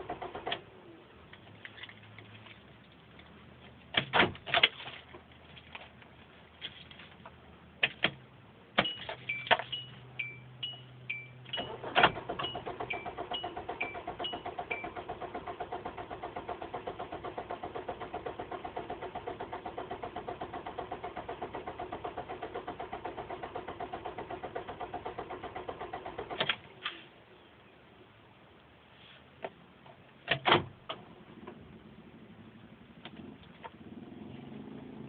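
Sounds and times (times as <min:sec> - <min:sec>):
car engine cranking: 0:00.0 - 0:02.4, 0:08.8 - 0:26.7
dashboard warning chime: 0:08.8 - 0:15.0.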